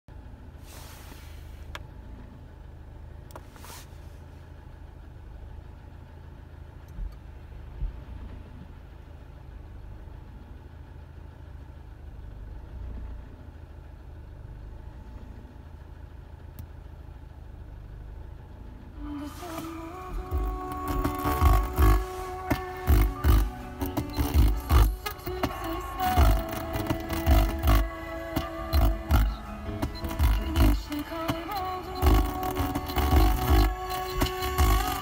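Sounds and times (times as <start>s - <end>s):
engine idling: 0.1s - 35.0s
short hissing rushes: 0.6s - 1.7s, 3.5s - 4.2s.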